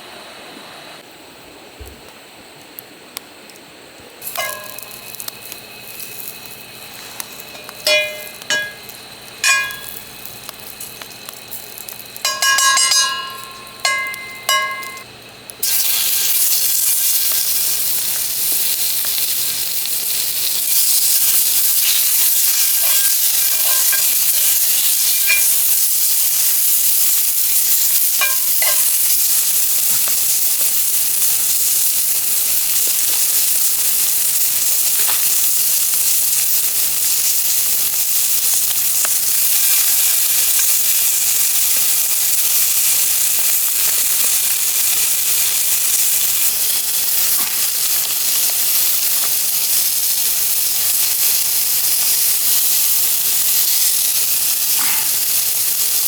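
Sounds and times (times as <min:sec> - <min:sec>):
short ringing clinks: 0:04.2 - 0:05.2, 0:07.5 - 0:10.2, 0:12.2 - 0:15.1
food sizzling in a hot pan: 0:04.2 - 0:56.0.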